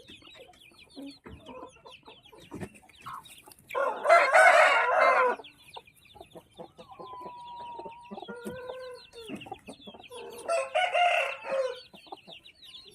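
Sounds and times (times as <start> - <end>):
chicks peeping: 0.0 - 12.9
rooster crowing: 3.8 - 5.4, 10.2 - 11.8.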